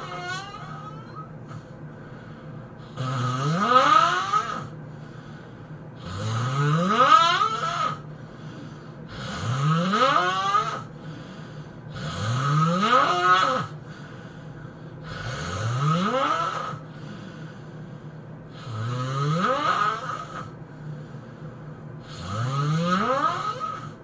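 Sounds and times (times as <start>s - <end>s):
person snoring loudly: 0.0s - 1.6s, 2.8s - 4.8s, 6.0s - 8.1s, 9.1s - 10.9s, 11.9s - 13.8s, 15.0s - 17.1s, 18.5s - 20.6s, 22.0s - 24.0s.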